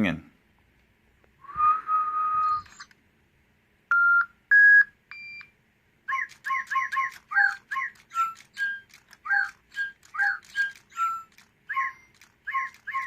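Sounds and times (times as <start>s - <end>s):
electronic toy bird notes: 6.1s - 13.0s.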